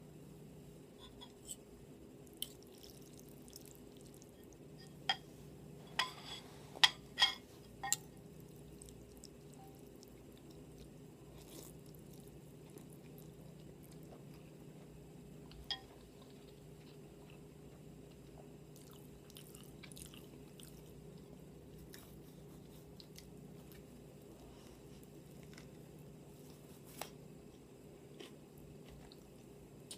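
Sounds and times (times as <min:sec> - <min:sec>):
low background hum: 0:00.0 - 0:29.9
tableware clinking: 0:05.9 - 0:08.1, 0:15.6 - 0:15.9.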